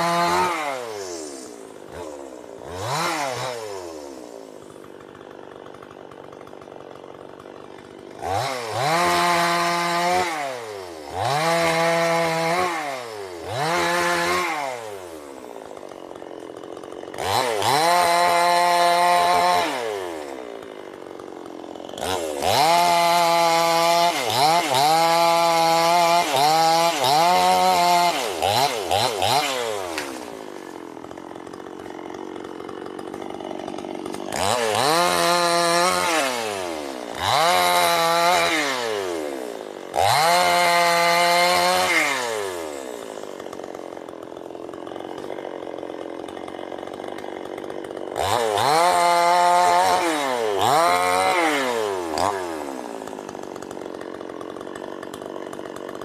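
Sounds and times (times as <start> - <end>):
chainsaw engine revving: 0.0 - 56.0.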